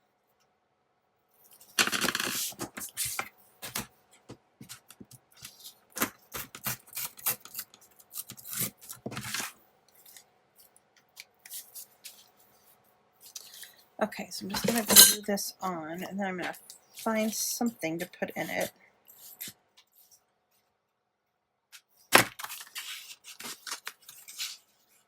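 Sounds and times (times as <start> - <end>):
scissors snipping paper: 5.4 - 9.4
paper rustling: 22.2 - 25.0.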